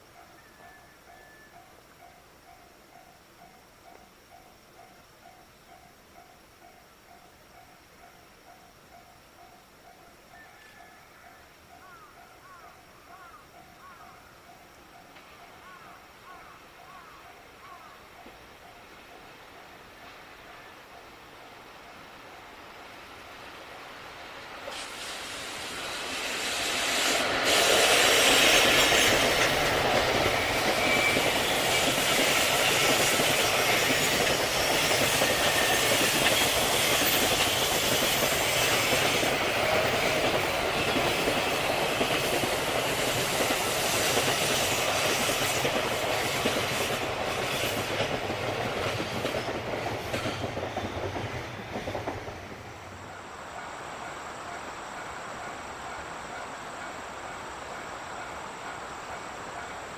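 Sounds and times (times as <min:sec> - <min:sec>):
freight train wheels clattering: 0:24.7 - 0:52.9.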